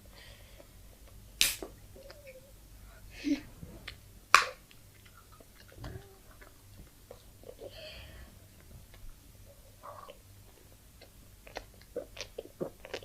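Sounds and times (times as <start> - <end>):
chewing crunches: 9.9 - 13.0.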